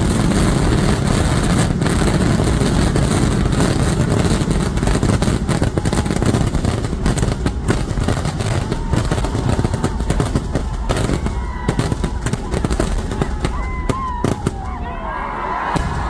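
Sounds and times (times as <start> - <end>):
fireworks blasts and crackling: 0.0 - 16.0
faint firework whistle: 3.5 - 16.0.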